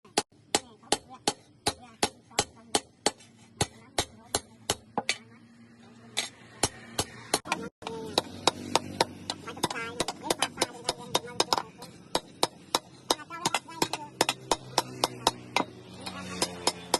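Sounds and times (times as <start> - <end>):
hammer striking steel on anvil: 6.2 - 16.9.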